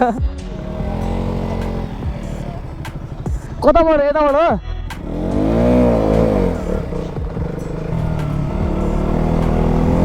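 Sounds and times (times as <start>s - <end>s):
motorcycle engine revving: 0.0s - 10.0s.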